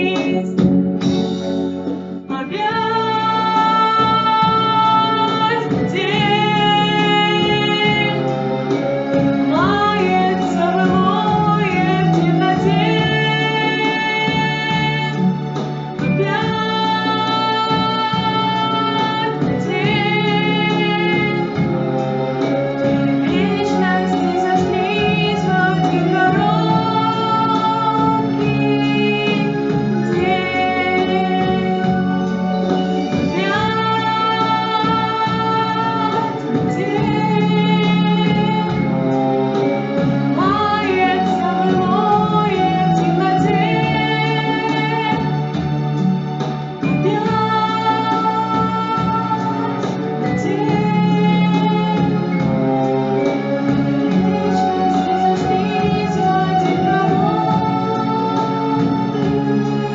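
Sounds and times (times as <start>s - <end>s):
woman singing slow song: 0.0s - 0.6s, 9.5s - 15.4s, 23.2s - 32.2s, 46.9s - 52.6s
instrumental backing track: 0.0s - 59.9s.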